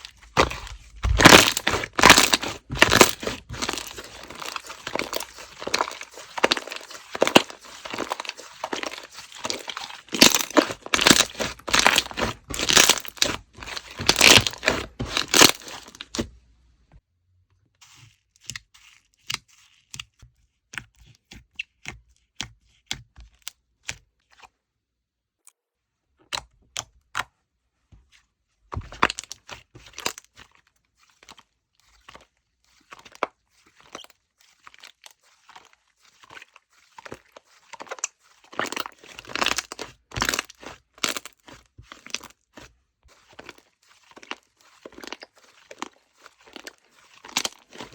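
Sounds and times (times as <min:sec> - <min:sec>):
slime crackling and popping: 0:00.0 - 0:16.3, 0:37.0 - 0:42.4, 0:43.2 - 0:47.9.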